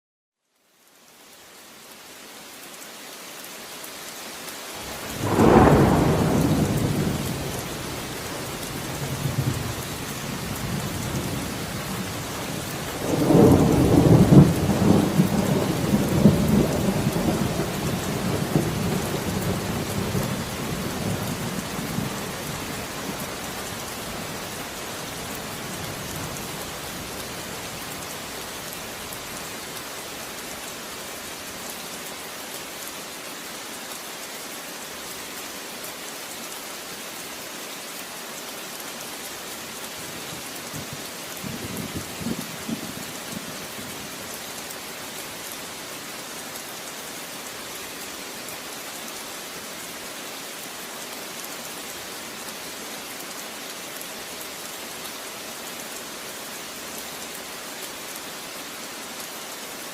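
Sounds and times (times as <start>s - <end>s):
steady rain: 0.4s - 59.9s
thunder clap: 5.2s - 7.4s
rolling thunder: 5.2s - 7.8s.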